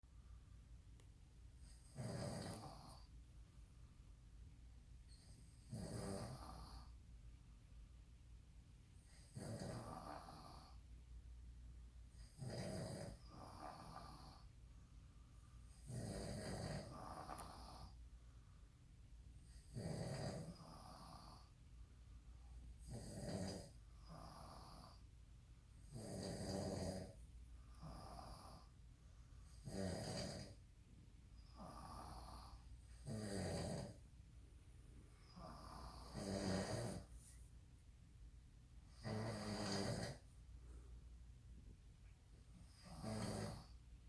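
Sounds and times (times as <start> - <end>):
people snoring: 1.7 - 3.0, 5.5 - 6.9, 9.1 - 10.8, 12.2 - 14.4, 15.8 - 17.9, 19.6 - 21.5, 22.8 - 25.0, 25.9 - 27.2, 29.6 - 30.6, 31.5 - 34.0, 35.2 - 37.1, 39.0 - 40.2, 42.7 - 43.8.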